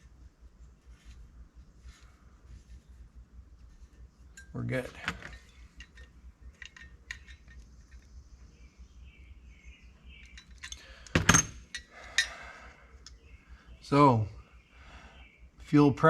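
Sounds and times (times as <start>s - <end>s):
small metal parts clinking: 4.3s - 8.1s, 10.1s - 12.4s
ringing metal clink: 10.2s - 12.4s.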